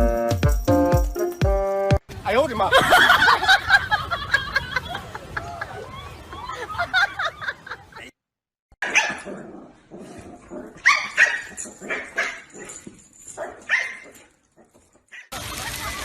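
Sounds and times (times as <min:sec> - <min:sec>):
dog barking: 0:08.8 - 0:09.5, 0:10.8 - 0:15.3.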